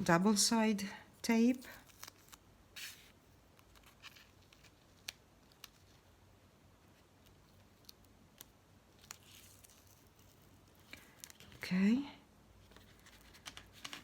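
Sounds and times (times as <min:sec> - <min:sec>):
faint clicks from paper and tape: 0:01.6 - 0:02.4, 0:03.5 - 0:06.1, 0:06.8 - 0:11.6, 0:12.7 - 0:14.0.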